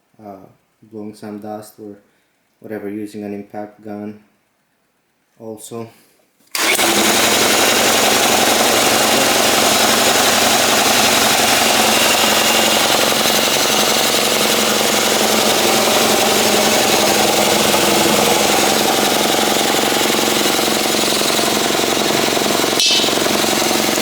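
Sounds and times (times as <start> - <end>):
air compressor running: 6.6 - 24.0.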